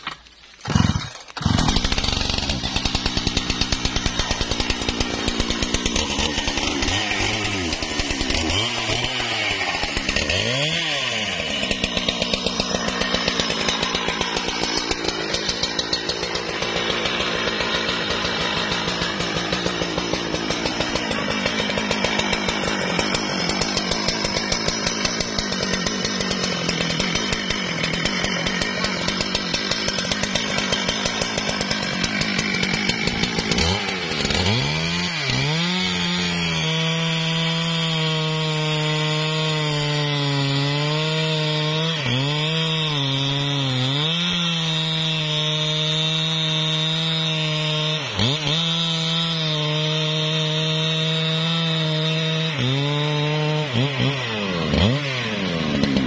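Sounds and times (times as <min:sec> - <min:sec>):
chainsaw running: 0:00.0 - 0:56.0.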